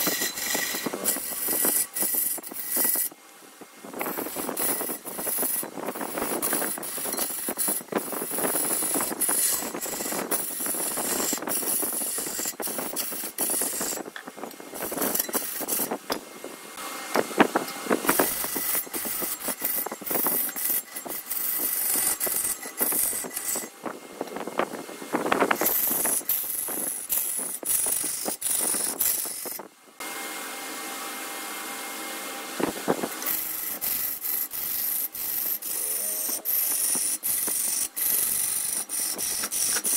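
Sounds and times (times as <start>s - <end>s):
wood scraping on a lathe: 0.0s - 3.2s, 3.9s - 16.2s, 17.2s - 29.7s, 33.0s - 39.9s
steady hum: 0.0s - 30.3s.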